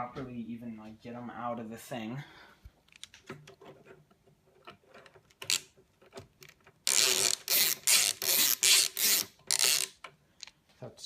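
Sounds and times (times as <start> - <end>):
screwdriver scraping screws: 2.9 - 10.2.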